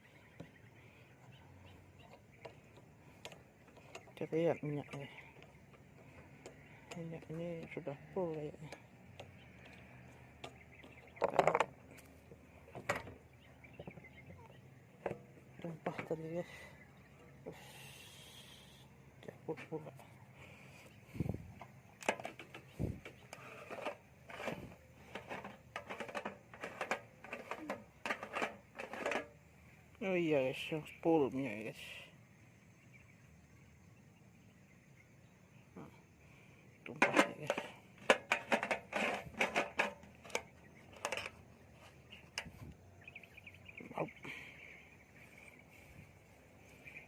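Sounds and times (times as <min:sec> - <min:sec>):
parts clicking and rattling: 0:00.0 - 0:17.6, 0:19.1 - 0:30.0, 0:36.8 - 0:43.6
insects chirping: 0:00.0 - 0:47.0.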